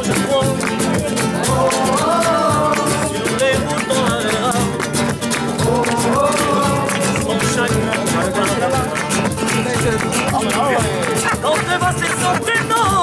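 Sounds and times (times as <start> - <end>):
acoustic guitar strumming: 0.0 - 13.0
person singing: 0.0 - 13.0.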